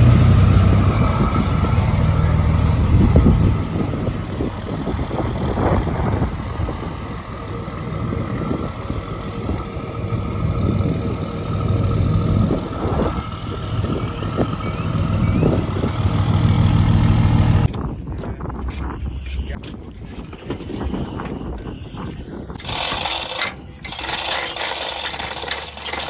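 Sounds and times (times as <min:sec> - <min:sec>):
engine idling: 0:00.0 - 0:17.7, 0:22.6 - 0:26.0.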